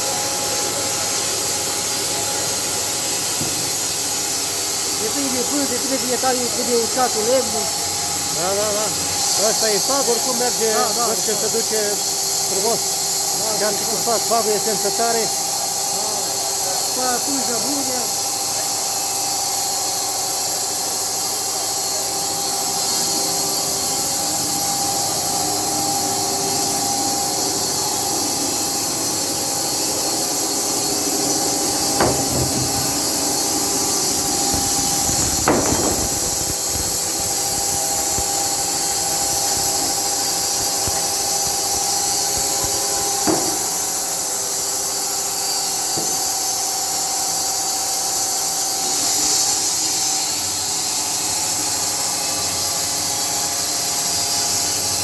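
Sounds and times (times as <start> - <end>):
band saw cutting log: 0.0 - 19.8, 20.4 - 55.0
sharp knocks: 3.4 - 3.7, 31.7 - 36.8, 42.3 - 43.8.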